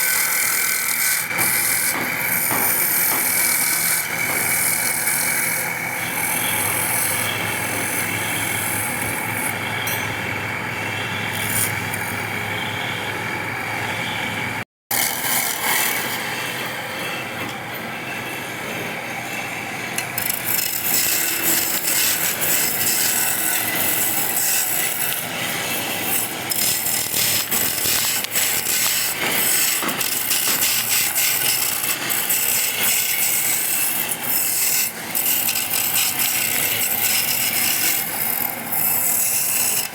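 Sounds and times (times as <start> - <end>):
tool scraping and rasping wood: 0.0 - 9.8, 14.9 - 16.3, 20.2 - 39.9
power tool humming and whining: 0.0 - 39.9.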